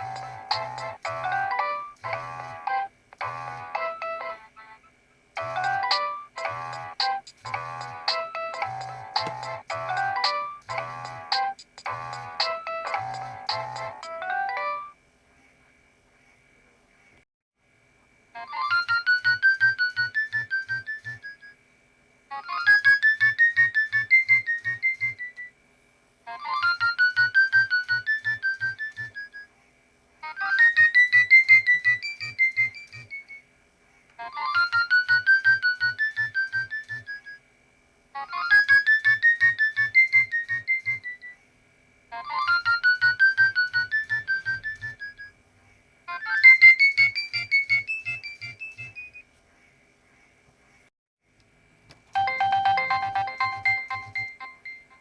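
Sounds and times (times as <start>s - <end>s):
mobile phone ringtone melody: 0.0s - 4.5s, 5.4s - 15.0s, 52.2s - 55.0s.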